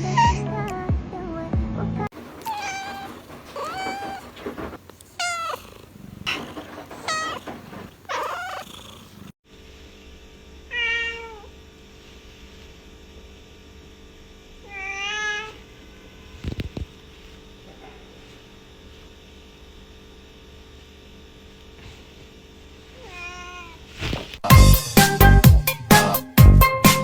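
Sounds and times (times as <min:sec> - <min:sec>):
cats meowing: 0:02.2 - 0:09.3, 0:23.0 - 0:23.9.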